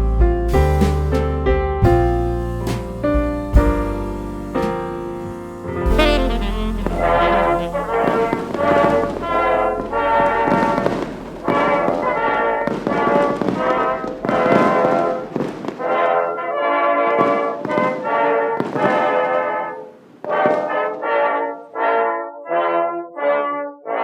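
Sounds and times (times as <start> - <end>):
brass music with sharp hits: 5.8 - 19.4.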